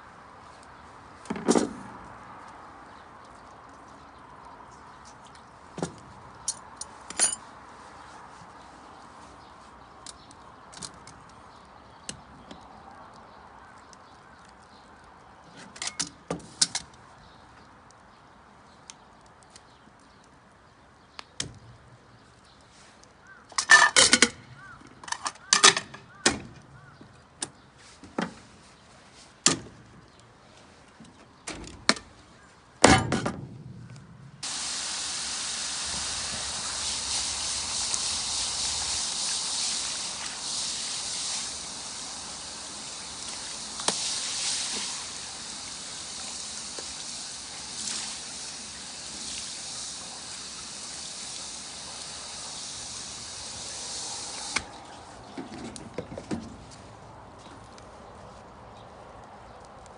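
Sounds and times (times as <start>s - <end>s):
steady hiss: 0.0s - 15.4s, 33.6s - 55.4s.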